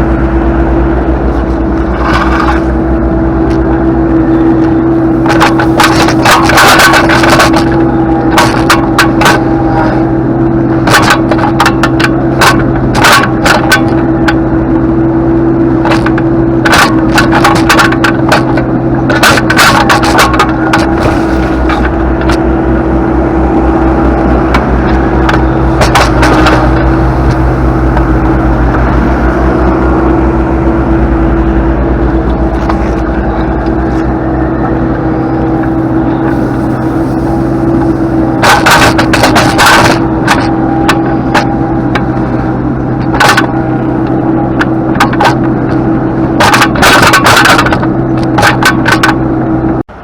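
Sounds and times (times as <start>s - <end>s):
skid steer engine running: 0.0s - 50.0s
scraping: 15.9s - 22.5s, 24.1s - 41.6s.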